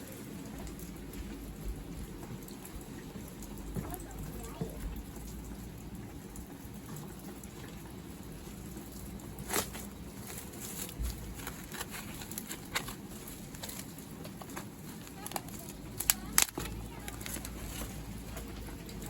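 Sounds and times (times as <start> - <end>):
rain pattering: 0.0 - 19.0.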